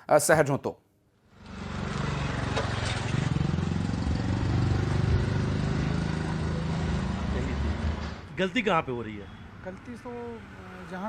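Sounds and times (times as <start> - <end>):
street traffic: 1.2 - 11.0
vehicle engine running close by: 1.3 - 8.2.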